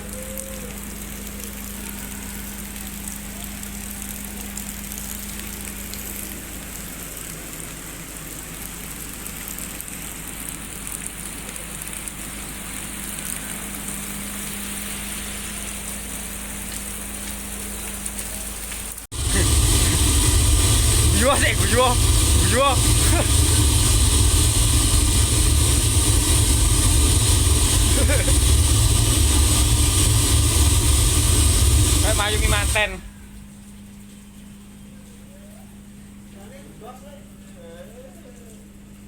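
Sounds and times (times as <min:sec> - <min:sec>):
steady rain falling: 0:00.0 - 0:38.8.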